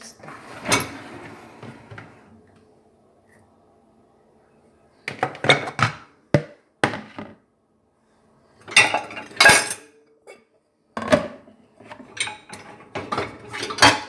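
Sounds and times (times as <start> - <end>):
dishes clinking and clattering: 8.6 - 14.0.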